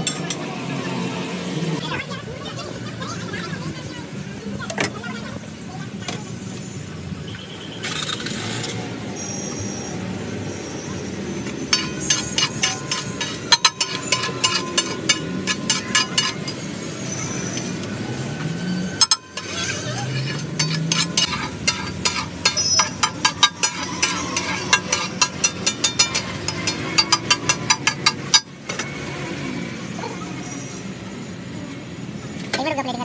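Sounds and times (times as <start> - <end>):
voices: 0.0 - 8.0, 9.5 - 26.8
street traffic: 0.0 - 33.0
metal spatula clanging on griddle: 11.6 - 16.7, 19.0 - 28.9.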